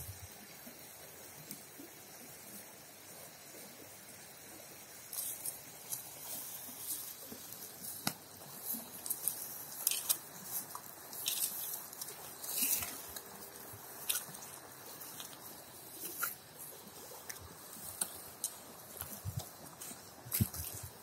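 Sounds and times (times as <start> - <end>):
cow tearing and crunching grass: 5.1 - 21.0.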